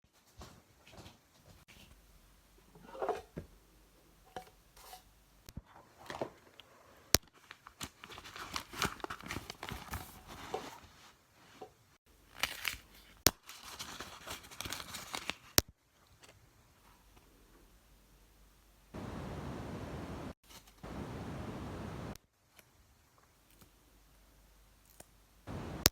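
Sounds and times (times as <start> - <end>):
paper crinkling and rustling: 7.3 - 11.1, 12.3 - 16.4.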